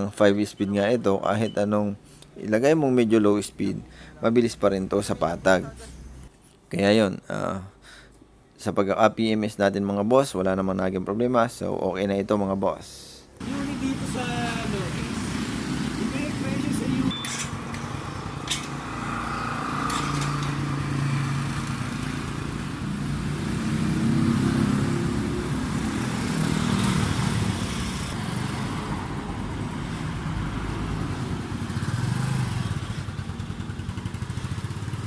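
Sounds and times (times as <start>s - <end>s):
motorcycle engine running: 32.7s - 35.0s.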